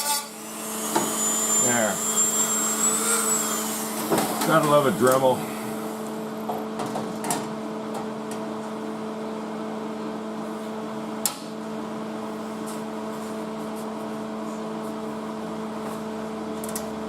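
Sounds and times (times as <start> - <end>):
rotary tool running: 0.0 - 6.1.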